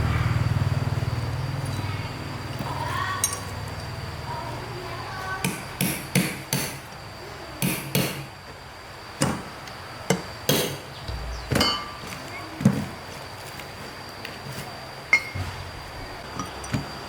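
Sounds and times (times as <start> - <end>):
hammer blows: 10.5 - 12.4.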